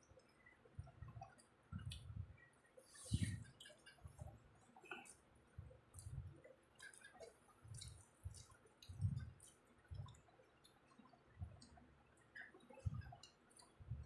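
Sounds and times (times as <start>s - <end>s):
wet eating mouth sounds: 5.9s - 10.2s
soft low thuds: 7.7s - 10.1s.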